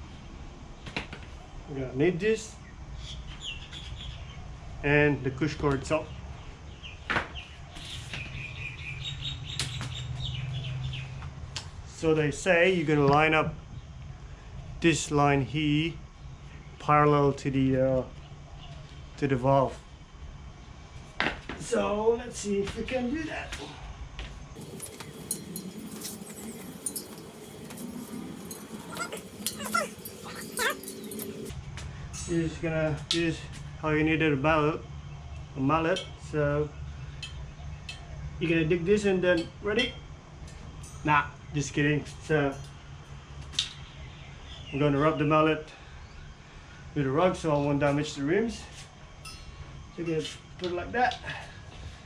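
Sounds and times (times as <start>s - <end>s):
small birds chirping: 3.0s - 4.4s, 6.0s - 11.2s, 24.6s - 31.5s
light clicks and clinks: 24.6s - 31.5s.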